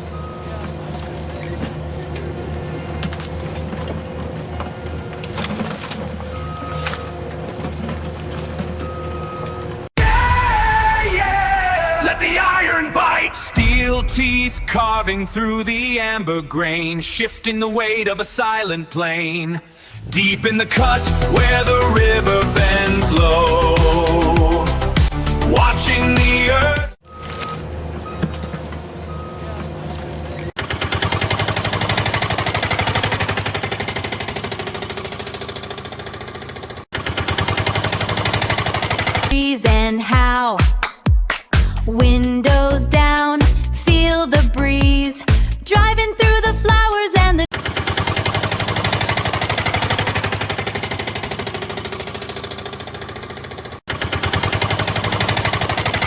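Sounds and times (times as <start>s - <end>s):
engine pulsing: 19.8s - 26.8s, 30.6s - 40.4s, 41.7s - 56.0s
rapid mechanical rattle: 30.6s - 39.3s, 47.5s - 56.0s.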